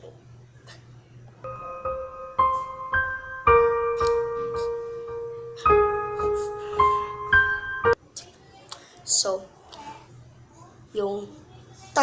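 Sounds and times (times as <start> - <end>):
slow piano melody: 1.4 - 8.0.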